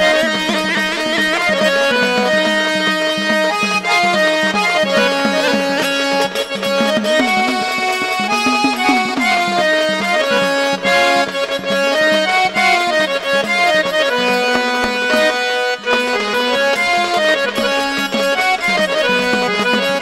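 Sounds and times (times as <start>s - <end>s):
hand drum: 0.0s - 20.0s
harmonium melody: 0.0s - 20.0s.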